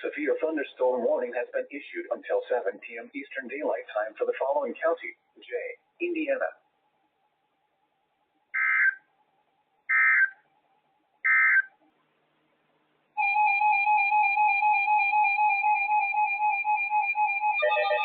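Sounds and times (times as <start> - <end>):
two-tone attention signal: 13.2 - 18.0.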